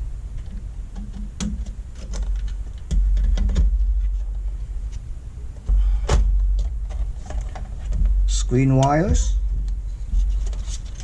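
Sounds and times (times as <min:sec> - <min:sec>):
clicks and knocks of parts: 0:00.4 - 0:05.0, 0:05.6 - 0:11.0
low handling rumble: 0:02.5 - 0:11.0.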